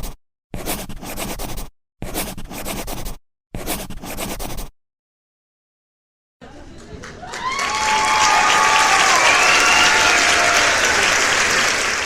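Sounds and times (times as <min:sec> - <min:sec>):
scratchy noise: 0:00.0 - 0:04.8.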